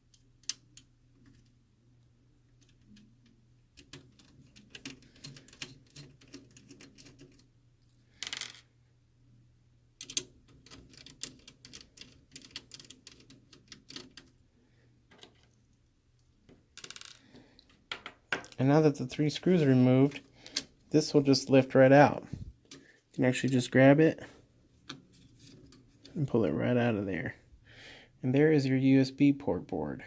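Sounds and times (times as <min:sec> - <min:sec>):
small metal screws handled: 0:16.8 - 0:17.7.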